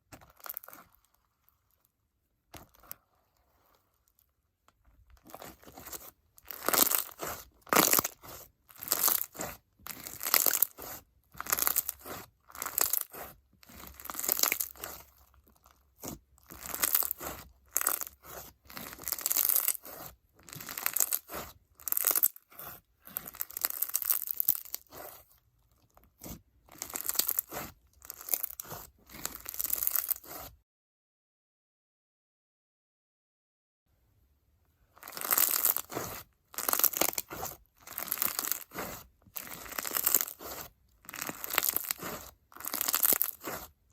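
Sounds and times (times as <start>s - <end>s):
slime crackling and popping: 5.2s - 25.3s, 26.2s - 30.5s, 34.9s - 43.8s.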